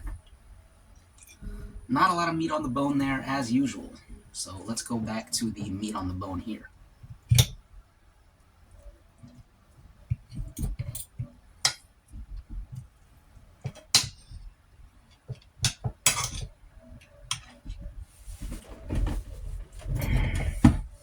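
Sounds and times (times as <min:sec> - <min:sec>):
utensils clinking on plate: 0:15.1 - 0:16.5.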